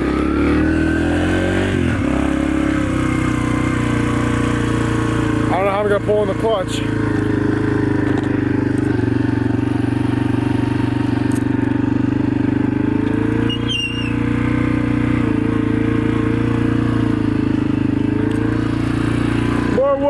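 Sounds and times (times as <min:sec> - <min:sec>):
vehicle engine running: 0:00.0 - 0:20.0
high chirp: 0:13.4 - 0:14.2.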